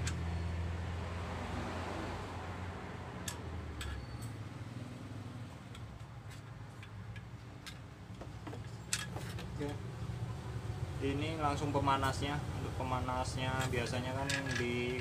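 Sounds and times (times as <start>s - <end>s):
small parts clicking and tapping: 3.2s - 4.4s, 5.6s - 9.7s, 13.6s - 15.0s.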